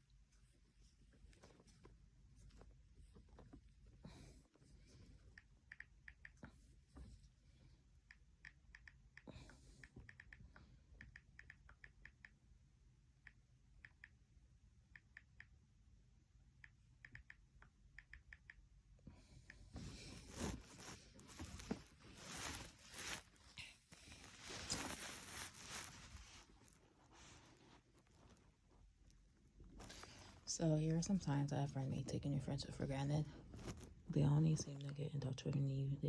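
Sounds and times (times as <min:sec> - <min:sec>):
irregular rustling: 0:19.5 - 0:31.1, 0:33.2 - 0:34.2.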